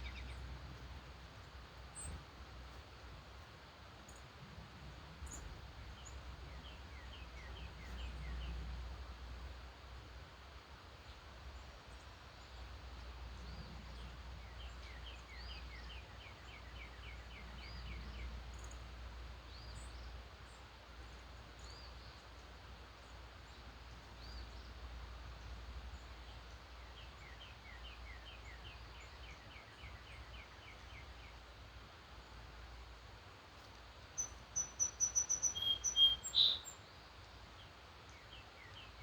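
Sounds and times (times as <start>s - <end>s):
bird trilling: 34.2s - 36.7s.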